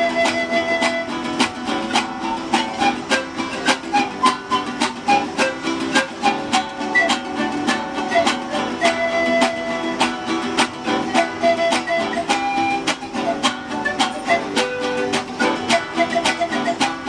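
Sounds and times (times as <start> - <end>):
acoustic guitar strumming: 0.0 - 17.0.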